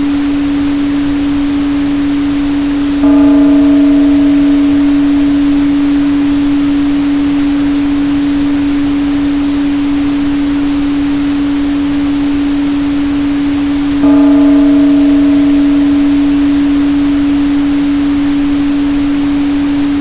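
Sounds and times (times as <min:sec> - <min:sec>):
synthesized hum: 0:00.0 - 0:20.0
bell-like ring: 0:03.0 - 0:08.7, 0:14.0 - 0:20.0.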